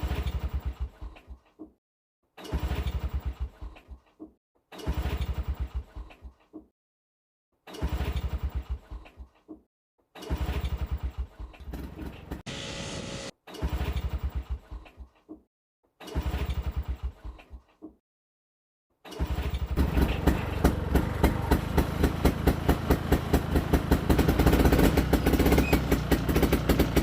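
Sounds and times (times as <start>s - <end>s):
two-stroke snowmobile engine running: 19.8s - 27.0s.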